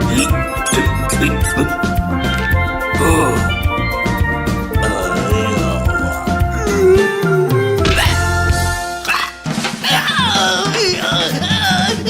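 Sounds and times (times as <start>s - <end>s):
cartoon soundtrack music: 0.0s - 12.0s
wavering warbly figure: 4.8s - 8.5s.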